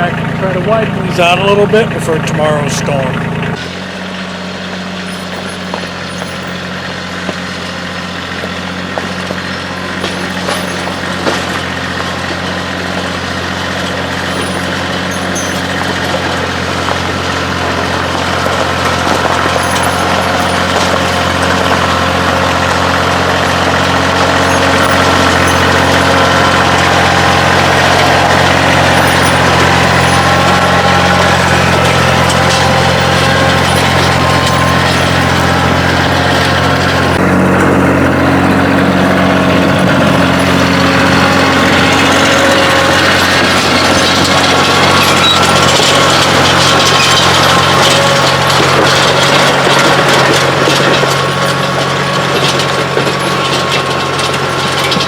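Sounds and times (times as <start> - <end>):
tractor diesel engine running: 0.0 - 55.0.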